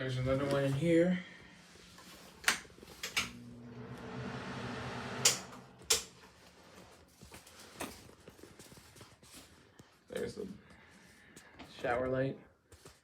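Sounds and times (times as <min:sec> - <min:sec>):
low electrical hum: 0:00.0 - 0:07.0
wall switch clicks: 0:02.4 - 0:03.5, 0:05.2 - 0:06.2.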